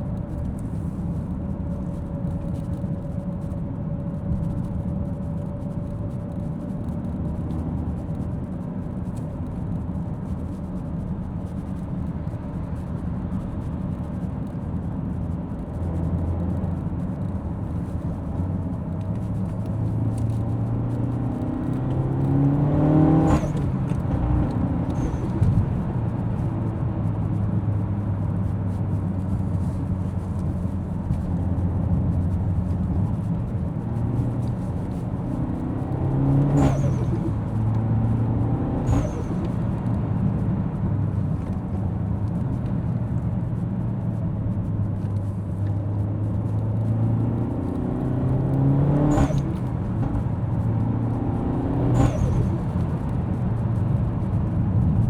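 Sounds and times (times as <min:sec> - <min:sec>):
road noise: 0:00.0 - 0:55.0
car engine revving: 0:19.8 - 0:27.8, 0:32.6 - 0:40.5, 0:46.3 - 0:55.0.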